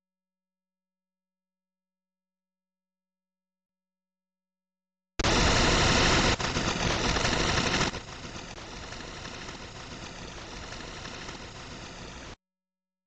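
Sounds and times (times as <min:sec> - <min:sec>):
harsh synthetic buzzing tones: 0:05.2 - 0:12.4.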